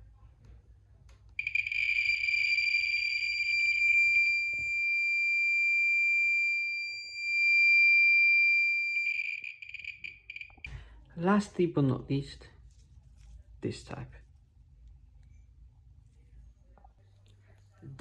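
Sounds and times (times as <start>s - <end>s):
high-pitched alarm tone: 1.4s - 10.7s
radiation detector crackle: 1.4s - 10.7s.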